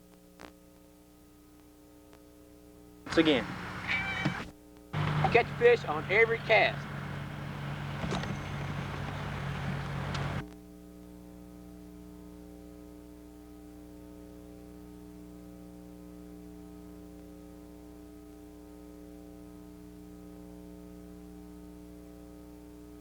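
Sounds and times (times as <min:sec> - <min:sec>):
outdoor ambience: 0:03.1 - 0:10.6.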